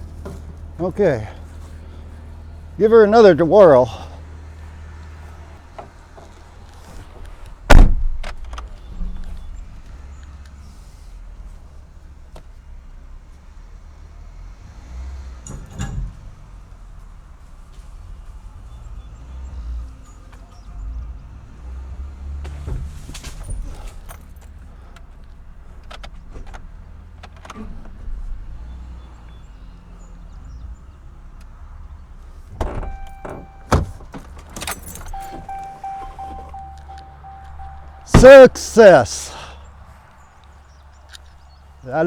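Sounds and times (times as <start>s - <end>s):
golf cart engine rumbling: 0.0s - 13.6s, 24.5s - 42.0s
high beep: 35.2s - 39.0s.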